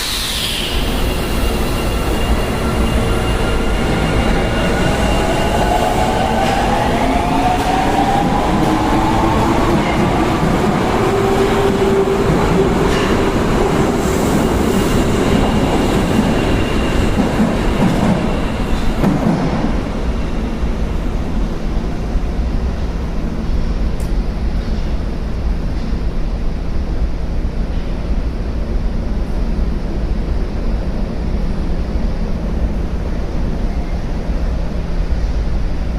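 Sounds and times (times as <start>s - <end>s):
train wheels rumbling: 0.0s - 26.2s.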